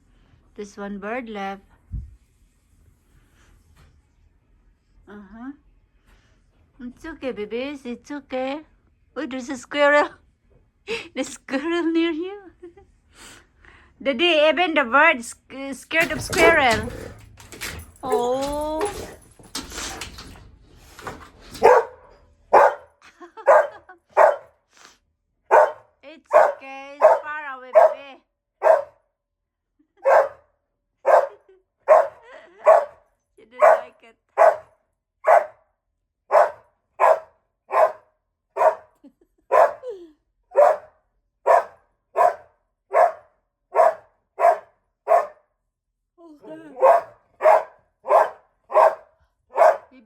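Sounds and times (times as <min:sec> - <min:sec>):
dog barking: 0:21.6 - 0:24.5, 0:25.5 - 0:28.0, 0:28.6 - 0:29.0, 0:30.0 - 0:30.4, 0:31.0 - 0:33.0, 0:33.6 - 0:35.6, 0:36.3 - 0:38.9, 0:39.5 - 0:39.9, 0:40.5 - 0:40.9, 0:41.5 - 0:45.4, 0:46.7 - 0:50.0.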